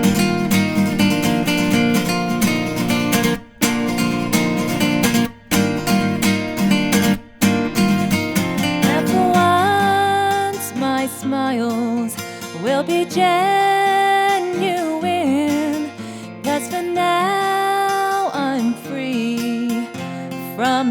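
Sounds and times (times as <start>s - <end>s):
quiet accompaniment: 0.0s - 12.0s
held melody notes with vibrato: 0.0s - 12.3s
strummed acoustic guitar: 0.0s - 20.9s.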